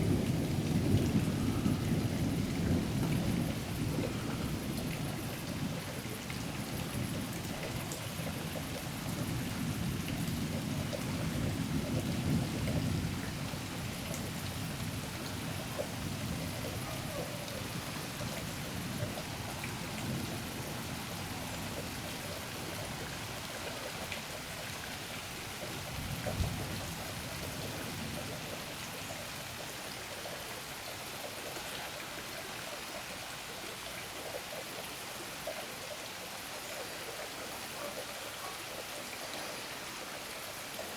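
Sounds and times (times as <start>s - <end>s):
rain hiss: 0.0s - 40.9s
thunder rumbling: 0.2s - 3.4s.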